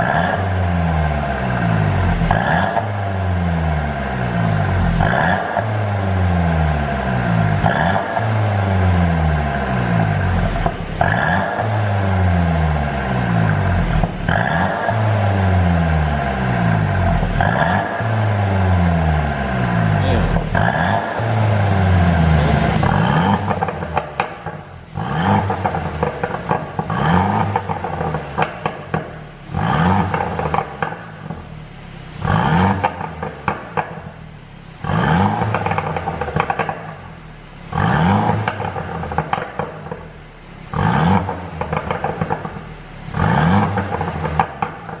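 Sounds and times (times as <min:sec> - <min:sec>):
car engine revving: 0:00.0 - 0:45.0
exhaust pops and crackles: 0:10.4 - 0:11.9, 0:20.0 - 0:45.0.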